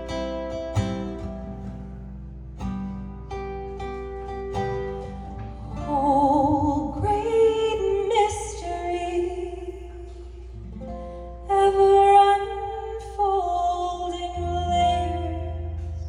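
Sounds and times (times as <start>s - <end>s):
woman singing with vibrato: 5.8s - 10.4s, 11.4s - 16.0s.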